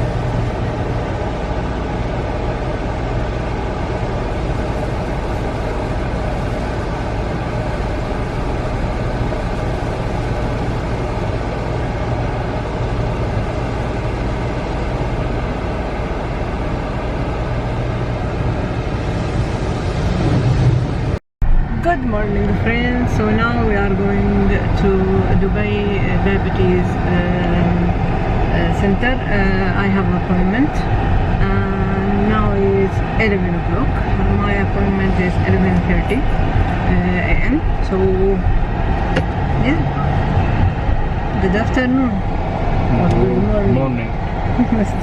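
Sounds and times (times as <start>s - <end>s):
car wash rushing: 0.0s - 21.2s
low hum: 0.0s - 45.0s.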